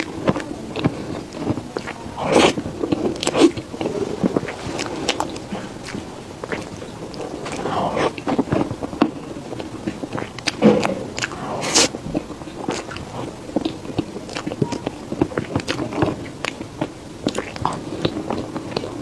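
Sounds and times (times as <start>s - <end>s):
biting and chewing: 0.0s - 19.0s
wet mouth clicks and smacks: 9.8s - 14.6s, 15.2s - 18.9s.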